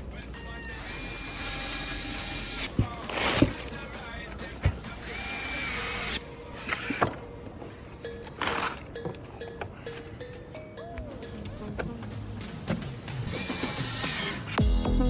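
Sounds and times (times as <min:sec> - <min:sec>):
background music: 0:00.0 - 0:15.0.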